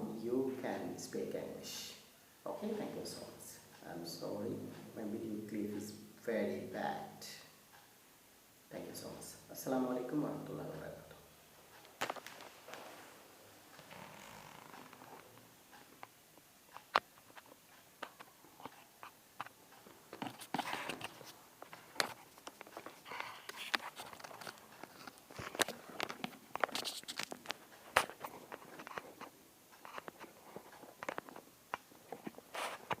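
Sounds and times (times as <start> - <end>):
irregular clicks and taps: 14.6 - 33.0.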